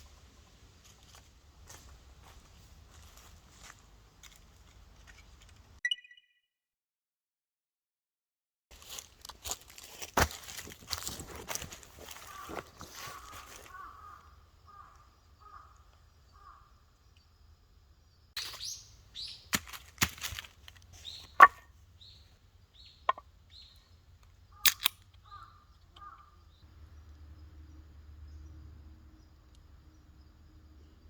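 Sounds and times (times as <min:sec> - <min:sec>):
bird calls: 0:11.6 - 0:17.4, 0:18.4 - 0:19.7, 0:20.8 - 0:27.2
sharp cracks or knocks: 0:19.5 - 0:20.6.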